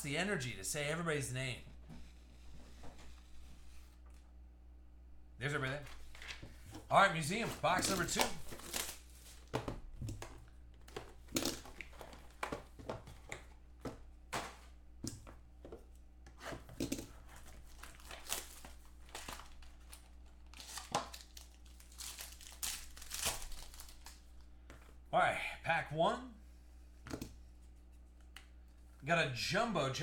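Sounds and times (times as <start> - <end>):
plastic wrapping crinkling and tearing: 7.3 - 9.5, 17.4 - 24.3.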